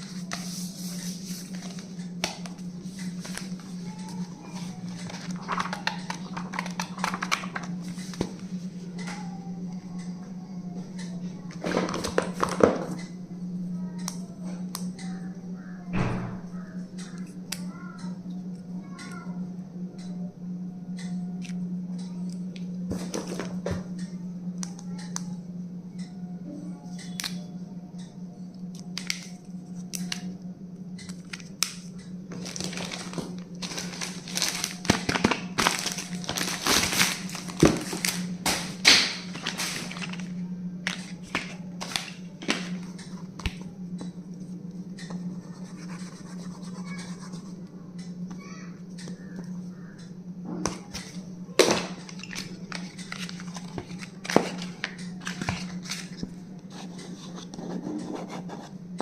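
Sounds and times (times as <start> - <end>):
steady low hum: 0.0 - 59.0
plastic and paper crinkling: 3.2 - 8.4, 32.3 - 42.9, 51.8 - 56.3.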